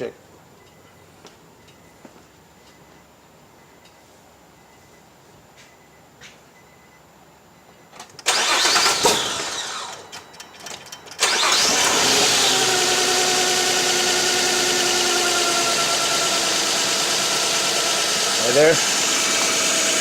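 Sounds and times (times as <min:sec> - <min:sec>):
car engine starting: 0:08.0 - 0:20.0
car engine idling: 0:08.2 - 0:20.0.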